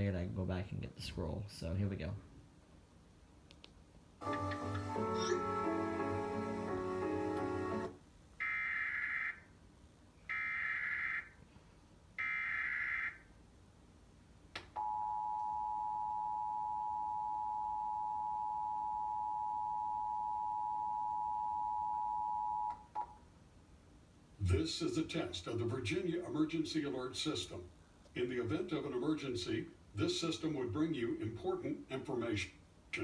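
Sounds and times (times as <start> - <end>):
click: 3.5 - 4.6.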